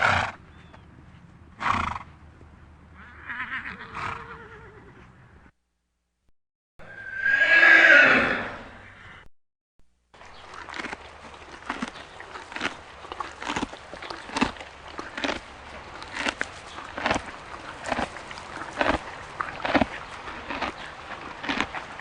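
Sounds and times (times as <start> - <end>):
horse hooves clopping on hard ground: 10.2 - 22.0.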